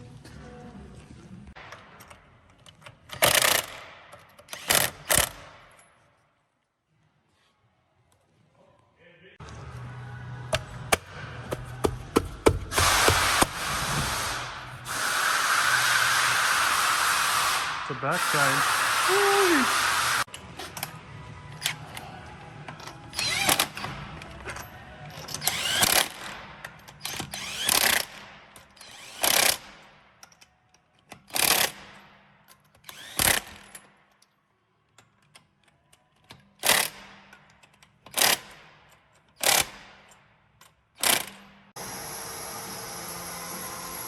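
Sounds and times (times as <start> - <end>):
impact wrench bursts: 10.5 - 20.3, 28.8 - 29.8, 39.4 - 39.9.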